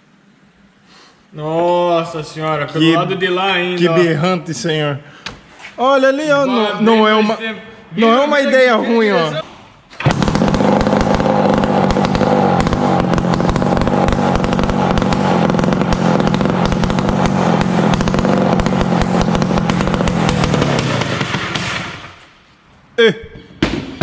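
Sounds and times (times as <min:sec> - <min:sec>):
two-stroke motorcycle engine running: 0:10.0 - 0:22.0.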